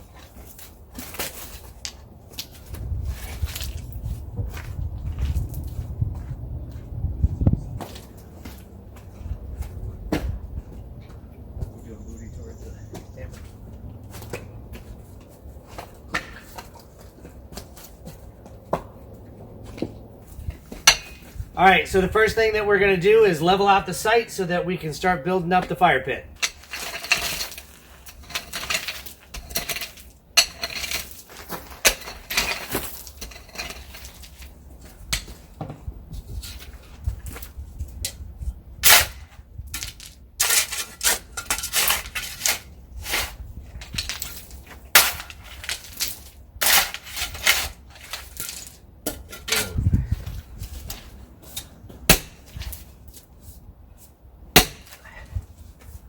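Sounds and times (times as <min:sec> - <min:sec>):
shovel scraping into ground: 0:38.8 - 0:53.3.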